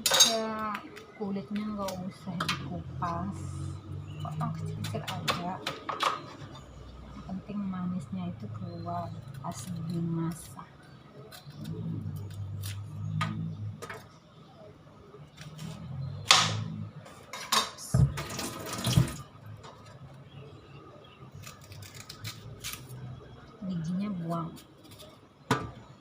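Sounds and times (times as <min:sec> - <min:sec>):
running tap water: 0:18.0 - 0:19.3.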